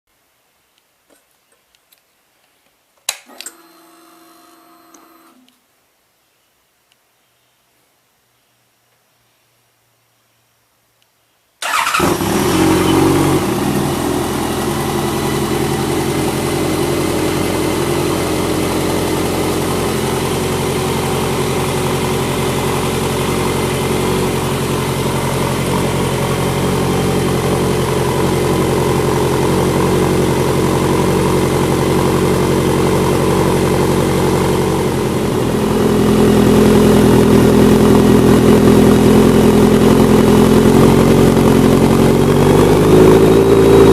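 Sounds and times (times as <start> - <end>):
motorcycle engine starting and idling: 11.6 - 43.9.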